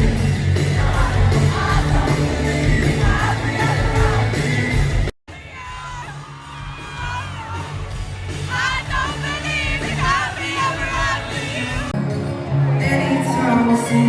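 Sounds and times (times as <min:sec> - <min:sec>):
lead singer singing: 0:00.0 - 0:12.0, 0:12.6 - 0:14.0
live pop band playing: 0:00.0 - 0:14.0
crowd yelling and whooping: 0:05.3 - 0:14.0.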